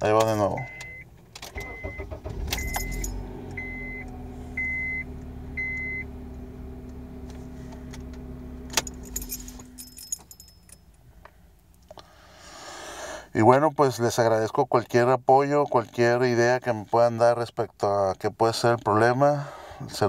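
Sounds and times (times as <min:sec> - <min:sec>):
car engine starting and idling: 0:00.1 - 0:11.8
dashboard chime beeping: 0:00.5 - 0:01.0, 0:02.6 - 0:06.1.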